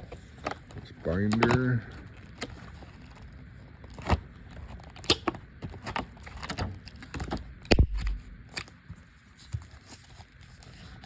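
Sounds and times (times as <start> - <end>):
packaging clicks and rustles: 0.0 - 11.0.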